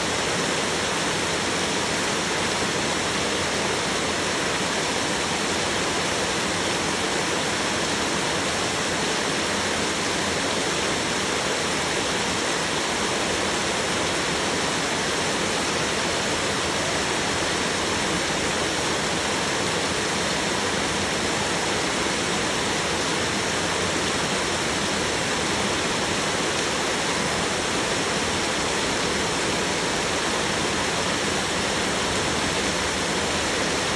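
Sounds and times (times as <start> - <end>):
heavy rain on a roof: 0.0 - 33.9.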